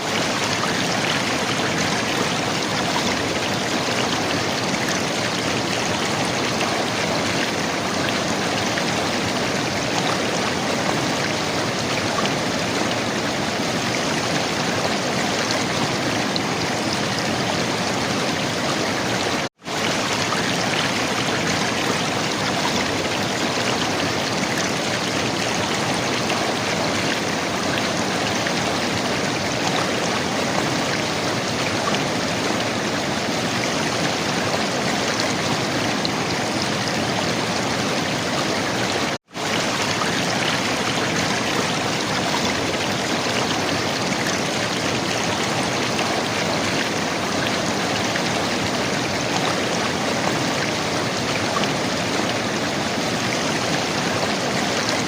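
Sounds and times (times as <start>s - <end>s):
river water flowing and gurgling: 0.0s - 55.0s.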